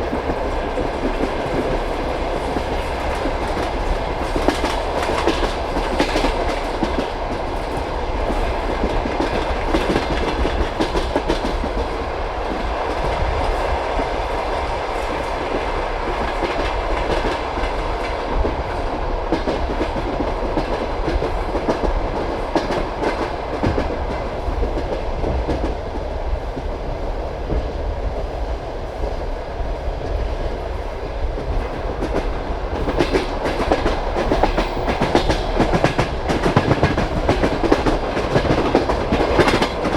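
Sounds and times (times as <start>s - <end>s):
train wheels clattering over rail joints: 0.0s - 11.9s, 31.4s - 39.9s
train rolling noise: 0.0s - 39.9s.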